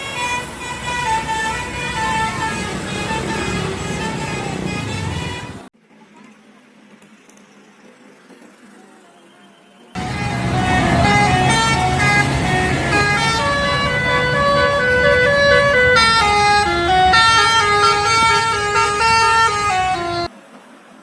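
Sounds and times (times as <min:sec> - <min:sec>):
bus multi-tone horn melody: 0:00.0 - 0:05.7, 0:09.8 - 0:20.3.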